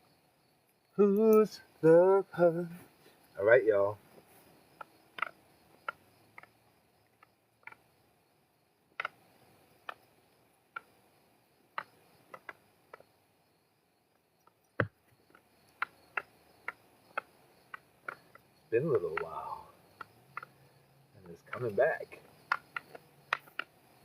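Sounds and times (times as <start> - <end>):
crickets chirping: 0.0 - 24.0.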